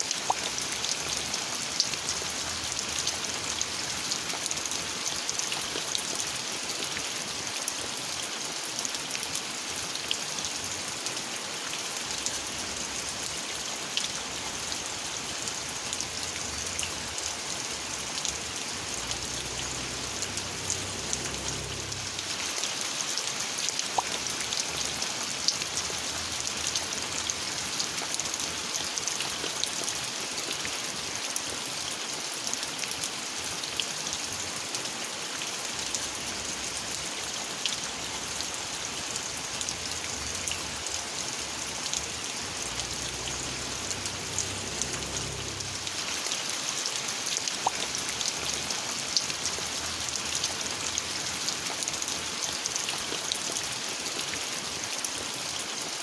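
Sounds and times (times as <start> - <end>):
raindrops ticking: 0.0 - 7.1, 12.0 - 30.7, 35.8 - 53.6
steady rain falling: 0.0 - 56.0
low rumble: 19.2 - 22.3.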